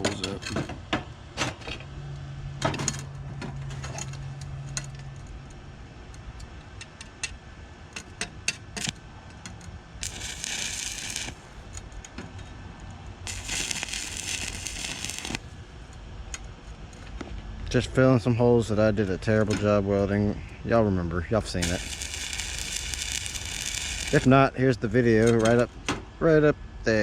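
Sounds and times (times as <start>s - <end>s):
welding arc crackling: 10.0s - 11.7s, 13.2s - 15.6s, 21.6s - 24.4s.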